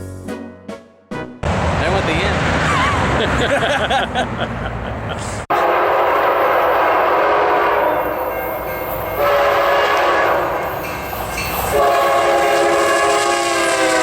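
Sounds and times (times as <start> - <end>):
train horn blasts: 5.5 - 14.0.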